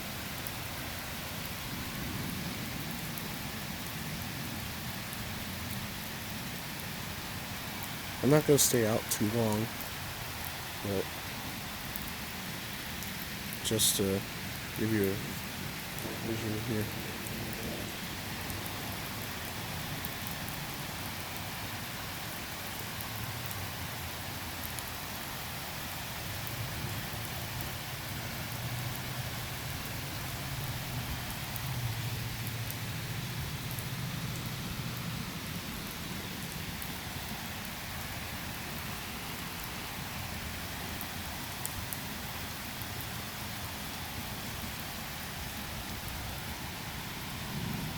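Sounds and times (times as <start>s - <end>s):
heavy rain falling: 0.0s - 47.9s
raindrop ticks: 7.7s - 47.9s
faint low thunder rumble: 13.5s - 21.2s, 45.8s - 47.9s.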